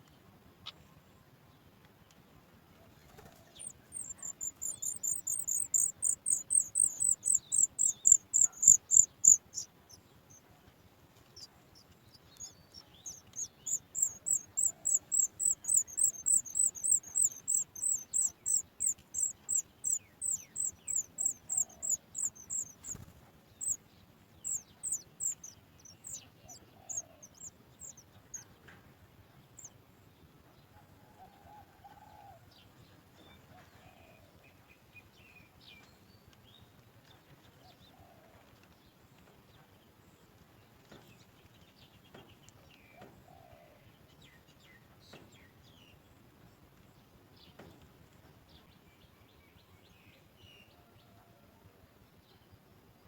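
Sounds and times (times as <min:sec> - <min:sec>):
nestlings begging chirps: 0:03.1 - 0:10.4, 0:11.3 - 0:28.4.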